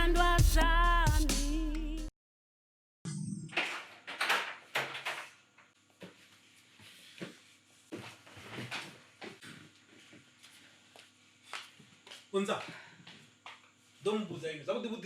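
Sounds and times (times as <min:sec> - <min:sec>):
objects being handled: 0:03.5 - 0:10.3.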